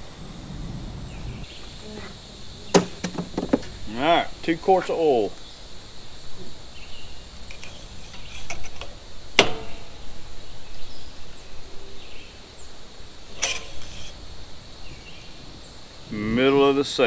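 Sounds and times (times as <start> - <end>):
sharp metallic clank: 9.4 - 10.1, 13.3 - 14.2
small metal clicks: 13.4 - 14.1.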